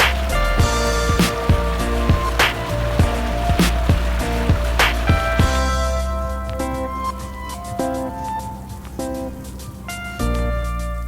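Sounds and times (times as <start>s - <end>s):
snare-like hit: 0.0s - 5.7s
heavy bass line: 0.0s - 9.6s
held synth notes: 0.0s - 11.0s
kick drum: 0.6s - 2.4s, 3.0s - 5.8s.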